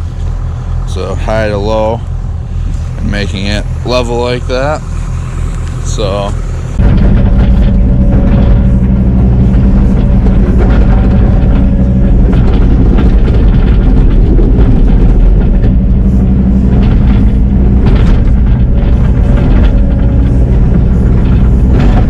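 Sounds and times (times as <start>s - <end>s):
excavator diesel engine: 0.0s - 22.0s.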